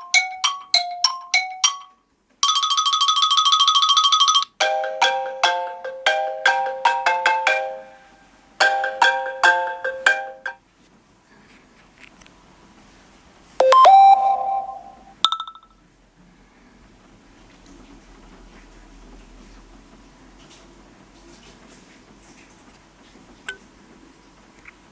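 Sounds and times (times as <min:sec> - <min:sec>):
chiming ringtone notes: 0:00.0 - 0:08.0, 0:13.6 - 0:15.7
rising ringtone tone: 0:00.0 - 0:08.0, 0:13.6 - 0:15.7.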